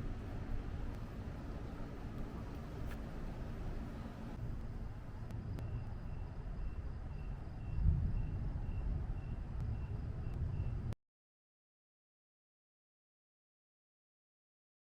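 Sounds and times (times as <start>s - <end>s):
distant thunder rumble: 7.0s - 10.9s.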